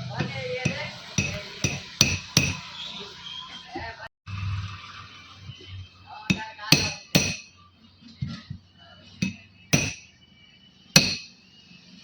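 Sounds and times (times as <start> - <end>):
hammer striking metal: 0.0 - 2.7, 6.3 - 7.6, 9.2 - 10.2, 10.9 - 11.4.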